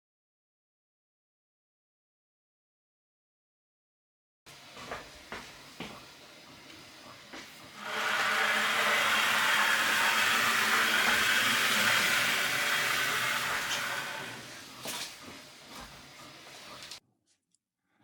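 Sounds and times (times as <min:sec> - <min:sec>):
small motor running: 0:07.8 - 0:14.6.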